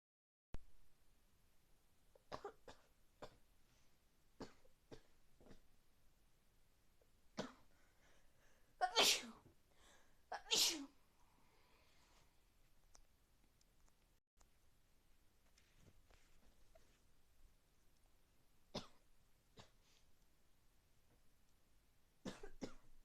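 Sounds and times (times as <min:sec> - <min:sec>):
loud sneezes: 0:08.8 - 0:09.4, 0:10.3 - 0:11.0.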